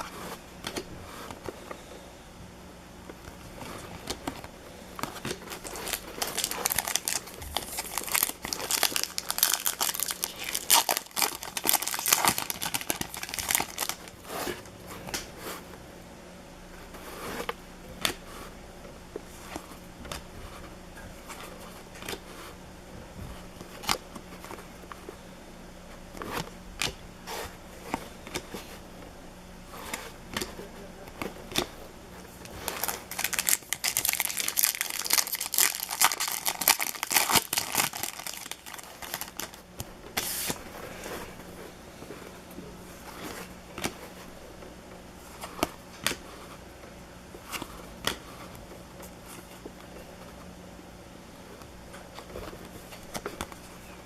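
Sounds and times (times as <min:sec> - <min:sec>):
wrappers crinkling and tearing: 0:05.0 - 0:14.7, 0:32.3 - 0:40.6.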